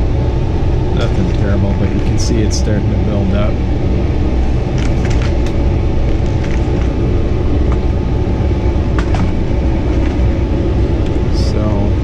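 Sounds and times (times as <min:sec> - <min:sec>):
furnace blower rumbling: 0:00.0 - 0:12.0.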